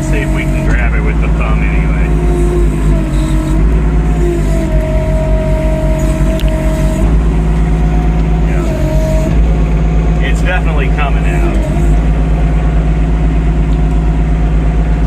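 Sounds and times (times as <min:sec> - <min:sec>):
excavator engine running: 0:00.0 - 0:15.0
hydraulic whine: 0:00.0 - 0:15.0.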